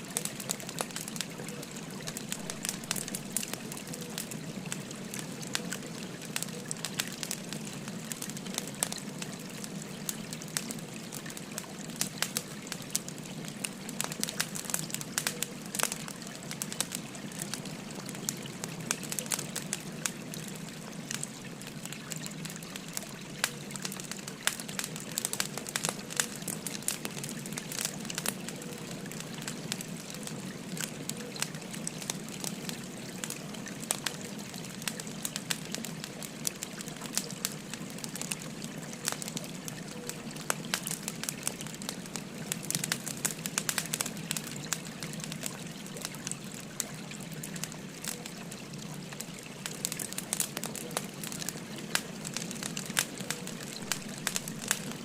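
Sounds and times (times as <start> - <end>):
firewood crackling and popping: 0.0 - 55.0.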